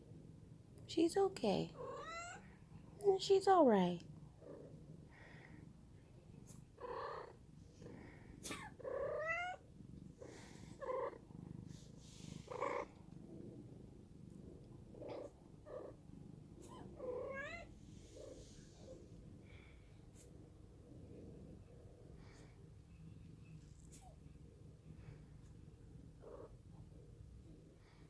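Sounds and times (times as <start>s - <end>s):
cat meowing: 1.8s - 2.4s, 8.5s - 9.6s, 16.6s - 17.7s.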